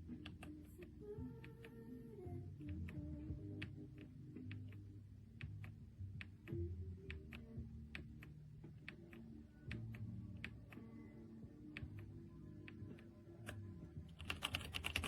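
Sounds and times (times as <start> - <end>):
soft background music: 0.0 - 15.0
mechanical keyboard clicks: 14.2 - 15.0.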